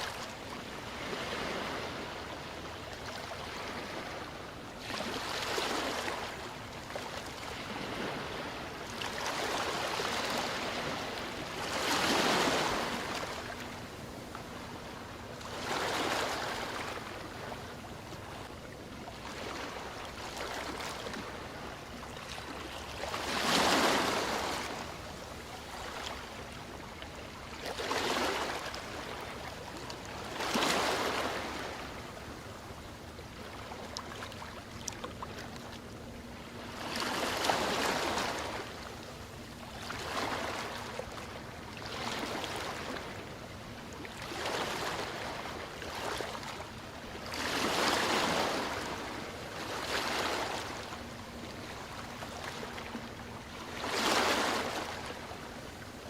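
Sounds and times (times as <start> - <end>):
surf hiss: 0.0 - 34.6
ocean waves washing ashore: 0.0 - 56.0.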